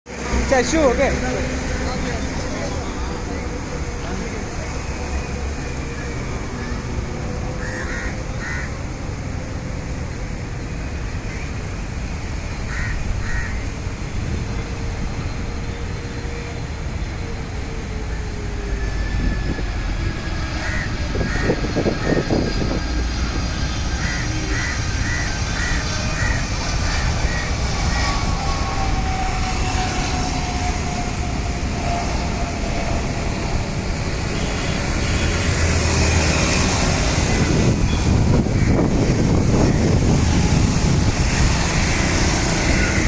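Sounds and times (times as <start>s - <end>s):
landing aircraft engine rumble: 0.1s - 43.0s
crows cawing: 7.6s - 8.8s, 12.7s - 13.6s, 20.5s - 22.2s, 24.0s - 28.2s, 38.6s - 38.9s.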